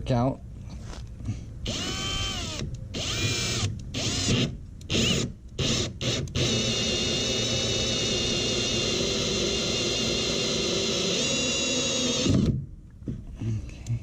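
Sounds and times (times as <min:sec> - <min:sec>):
electric drill motor whining: 0:01.6 - 0:12.6.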